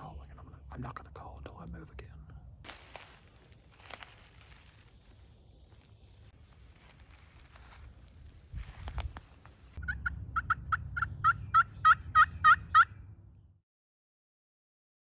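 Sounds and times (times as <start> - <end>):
rustle of movement: 2.7 - 9.8
wild turkey yelps: 9.8 - 13.0.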